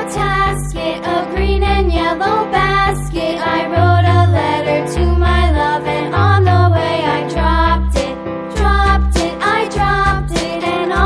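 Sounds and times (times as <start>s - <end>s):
upbeat children's tune: 0.0s - 11.0s.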